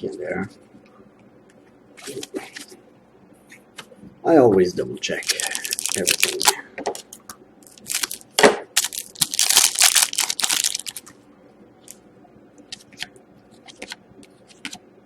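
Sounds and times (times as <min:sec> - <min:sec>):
trading cards rustling: 0:05.2 - 0:11.1.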